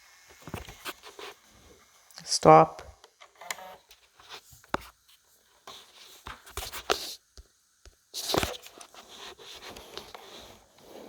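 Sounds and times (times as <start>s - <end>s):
handling rustles: 8.2s - 11.0s.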